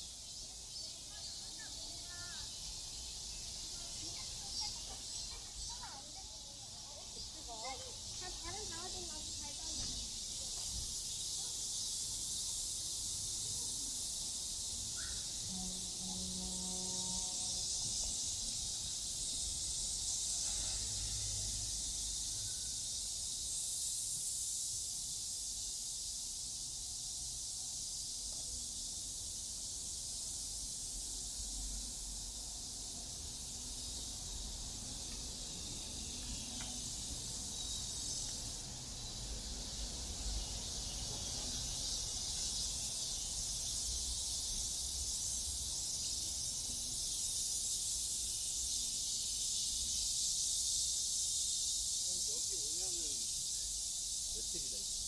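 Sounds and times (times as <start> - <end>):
insects buzzing: 0.0 - 55.0.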